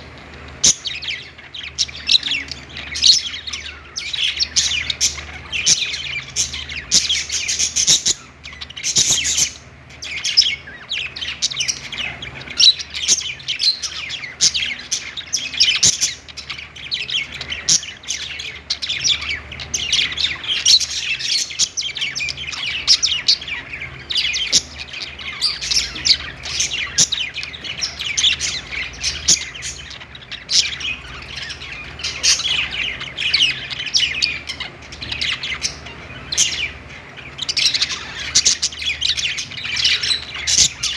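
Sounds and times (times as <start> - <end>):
budgerigars chirping and chattering: 0.0 - 40.9.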